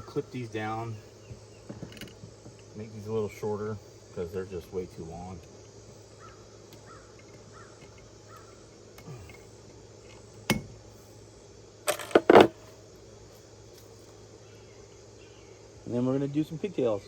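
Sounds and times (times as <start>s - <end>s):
faint crow caws: 6.2s - 9.3s.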